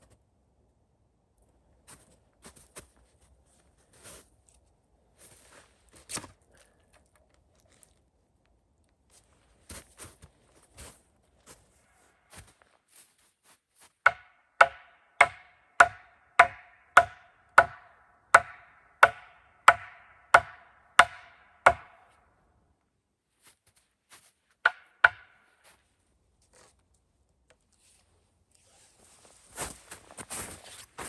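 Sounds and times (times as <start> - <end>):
axe chopping wood: 14.1 - 22.1, 24.6 - 25.4.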